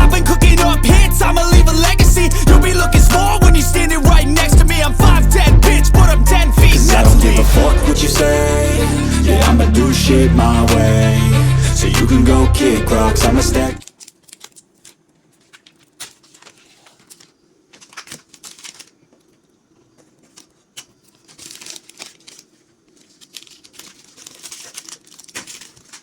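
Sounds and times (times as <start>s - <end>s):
crinkling and rustling: 13.8s - 26.0s.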